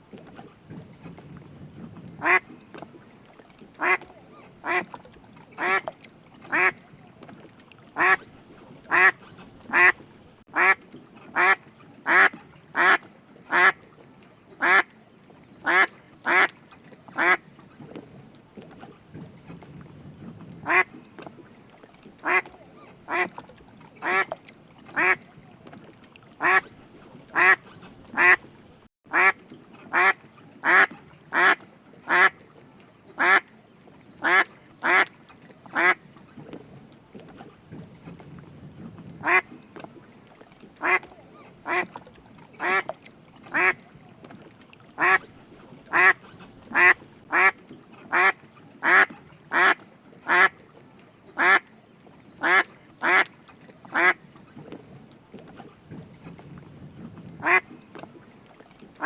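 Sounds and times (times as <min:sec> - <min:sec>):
duck quacking: 0:02.2 - 0:02.4, 0:03.8 - 0:04.0, 0:04.6 - 0:04.8, 0:05.6 - 0:05.8, 0:06.5 - 0:06.8, 0:08.0 - 0:08.2, 0:08.9 - 0:10.0, 0:10.6 - 0:10.8, 0:11.4 - 0:13.8, 0:14.6 - 0:14.9, 0:15.7 - 0:16.5, 0:20.6 - 0:20.9, 0:22.2 - 0:22.5, 0:23.1 - 0:23.3, 0:25.0 - 0:25.2, 0:26.4 - 0:26.6, 0:27.4 - 0:27.6, 0:28.2 - 0:28.4, 0:29.1 - 0:32.3, 0:33.2 - 0:33.4, 0:34.2 - 0:35.1, 0:35.8 - 0:36.0, 0:39.2 - 0:39.4, 0:45.0 - 0:45.2, 0:45.9 - 0:50.5.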